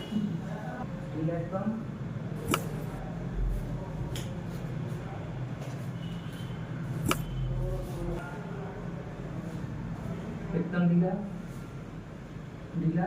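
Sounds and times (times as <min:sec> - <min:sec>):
sharp clicks: 0:02.4 - 0:02.8, 0:07.0 - 0:07.3.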